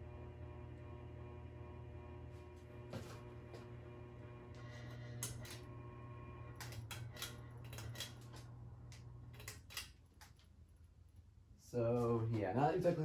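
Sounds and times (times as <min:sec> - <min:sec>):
ceiling fan motor humming: 0:00.0 - 0:13.0
irregular clicks and ticks: 0:06.5 - 0:11.4.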